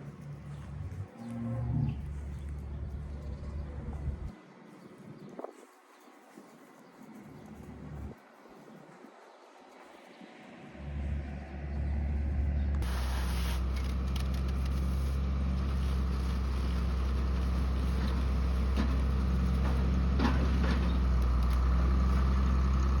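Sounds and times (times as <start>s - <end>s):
tractor engine running: 10.7s - 23.0s.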